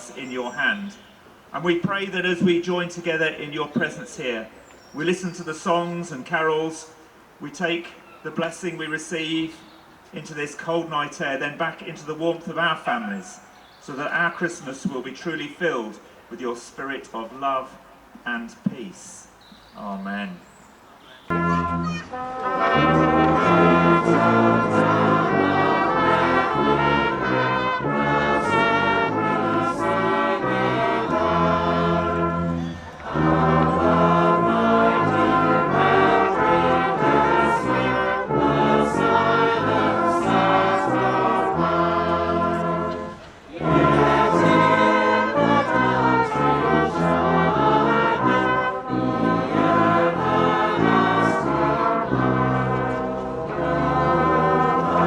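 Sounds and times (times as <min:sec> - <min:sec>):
brass band playing a carol: 0:00.0 - 0:19.2, 0:21.3 - 0:55.0
crowd singing along: 0:21.3 - 0:55.0.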